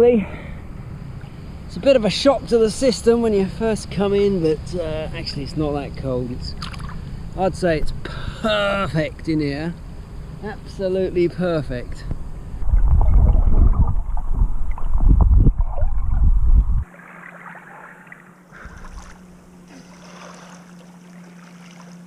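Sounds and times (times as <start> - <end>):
water splashing from swimming: 16.9 - 22.0.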